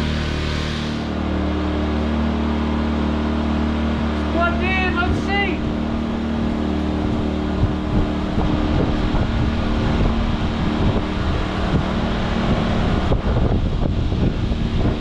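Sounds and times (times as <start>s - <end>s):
generators running: 0.0s - 15.0s
wind buffeting microphone: 3.9s - 15.0s.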